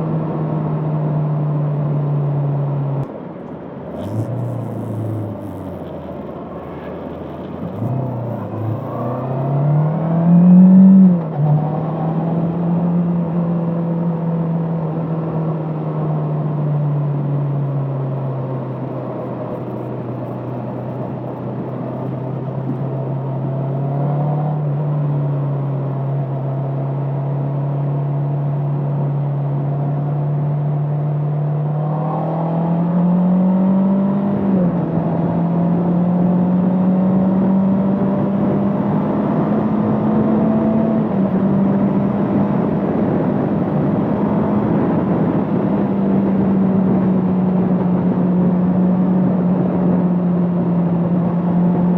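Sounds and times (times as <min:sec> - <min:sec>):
motorcycle engine running: 0:04.0 - 0:09.3.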